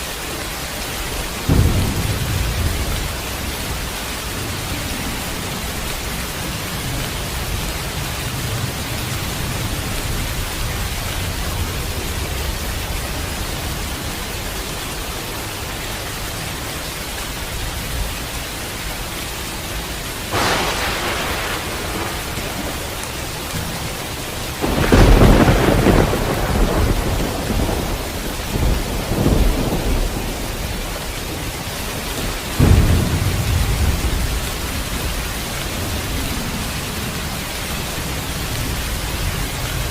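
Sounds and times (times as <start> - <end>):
steady rain: 0.0 - 39.9
distant thunder rumble: 0.4 - 15.6, 20.3 - 39.9
sharp thunderclaps: 1.3 - 13.9, 20.3 - 37.1.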